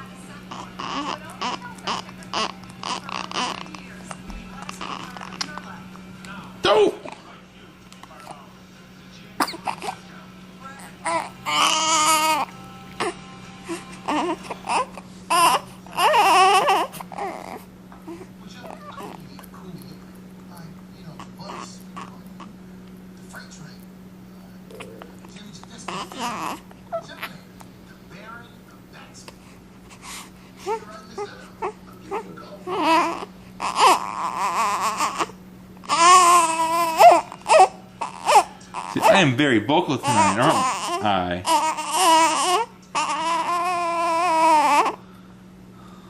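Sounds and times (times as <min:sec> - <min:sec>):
baby crying calls: 0:00.5 - 0:03.8, 0:11.0 - 0:13.2, 0:14.0 - 0:18.2, 0:25.9 - 0:27.2, 0:32.6 - 0:39.3, 0:40.0 - 0:45.0.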